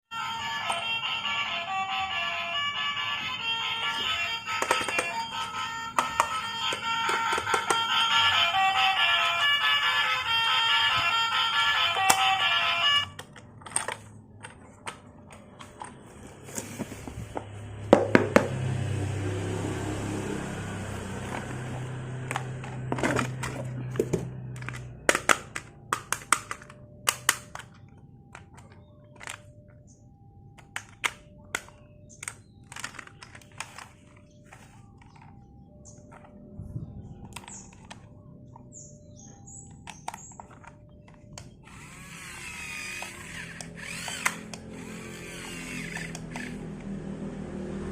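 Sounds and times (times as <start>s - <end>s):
plastic clicks and knocks: 4.6s - 5.2s, 5.9s - 7.9s.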